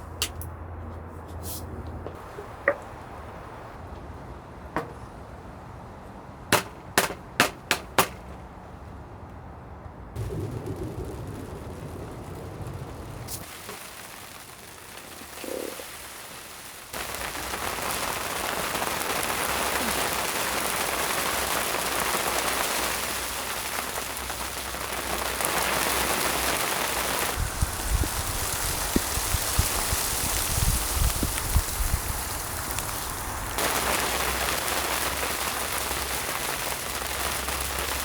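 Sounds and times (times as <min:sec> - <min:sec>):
rain and sleet falling: 0:10.2 - 0:38.0.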